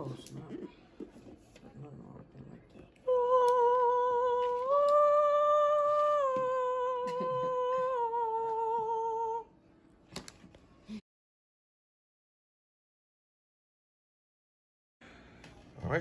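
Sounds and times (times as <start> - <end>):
person singing a long note: 3.1 - 9.5.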